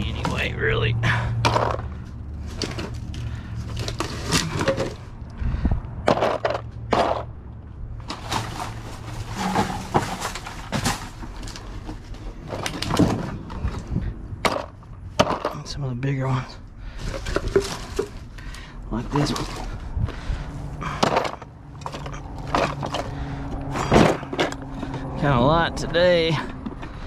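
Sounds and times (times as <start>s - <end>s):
metal oil filters clanking: 16.8s - 20.2s, 20.8s - 25.4s.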